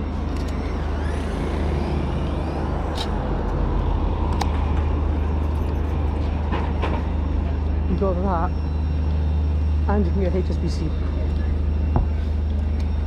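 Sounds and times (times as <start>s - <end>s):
road traffic rumble: 0.0s - 13.0s.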